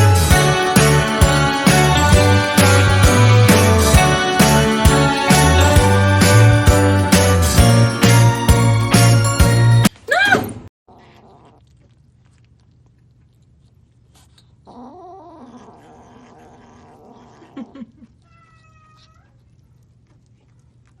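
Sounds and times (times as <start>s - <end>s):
cat meowing: 18.2s - 19.4s.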